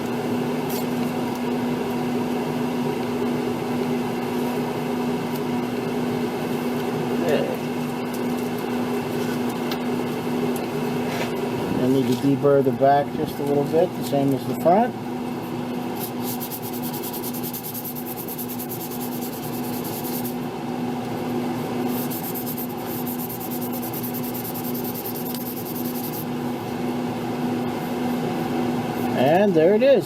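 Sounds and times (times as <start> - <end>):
steady background hum: 0.0 - 30.0
sandpaper rubbing on metal sheet: 16.0 - 20.4, 21.9 - 26.3.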